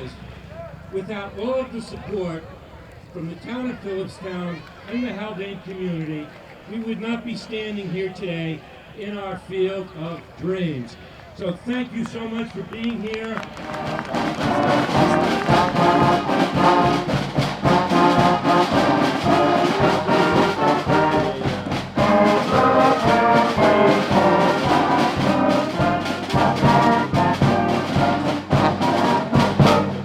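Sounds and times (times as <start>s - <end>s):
brass band playing: 13.4s - 30.0s
steady drum beat: 13.5s - 30.0s.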